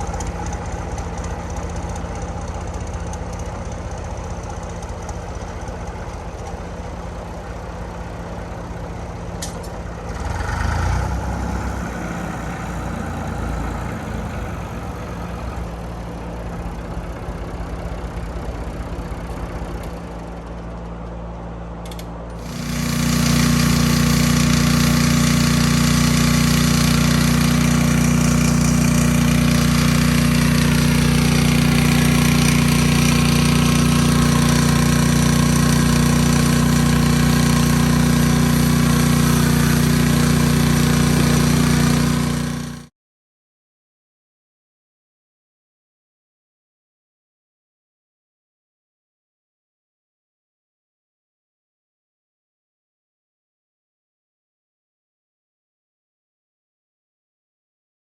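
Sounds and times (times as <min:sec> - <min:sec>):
motor-driven machine humming: 0:22.3 - 0:42.9.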